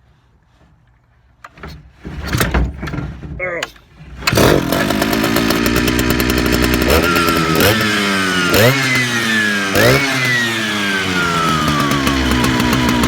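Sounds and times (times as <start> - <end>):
chainsaw revving: 4.2 - 13.0.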